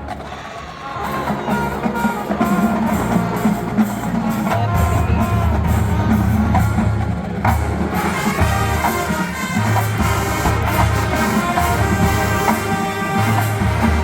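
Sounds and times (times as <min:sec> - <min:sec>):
drumline hits: 0:00.0 - 0:14.0
low brass notes: 0:01.0 - 0:14.0.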